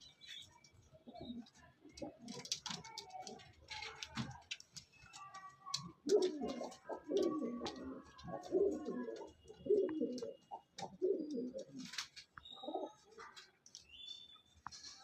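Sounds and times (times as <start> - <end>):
pigeon cooing: 6.0 - 12.0.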